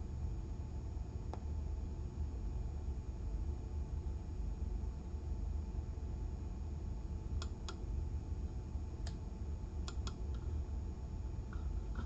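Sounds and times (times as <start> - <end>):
steady low hum: 0.0 - 12.0
light sharp clicks: 9.9 - 10.4.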